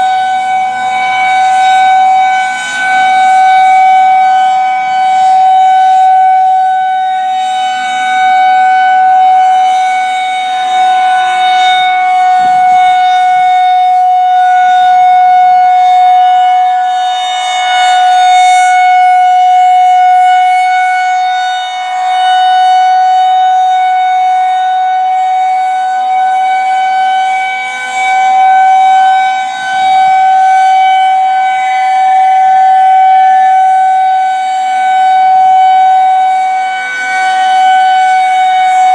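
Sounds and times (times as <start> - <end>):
rotating warning siren: 0.0 - 38.9.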